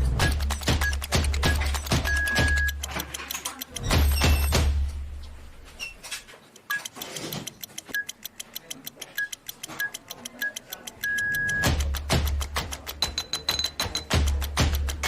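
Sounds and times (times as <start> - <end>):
background music with ticking beat: 0.0 - 4.9, 6.5 - 15.0
keypad beeps: 0.2 - 4.5, 6.6 - 14.4.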